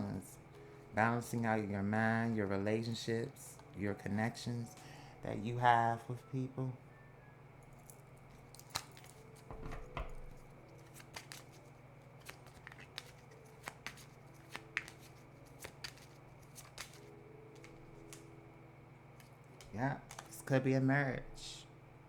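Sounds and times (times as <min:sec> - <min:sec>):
cards snapping and tapping: 0:07.8 - 0:18.3, 0:19.2 - 0:20.4.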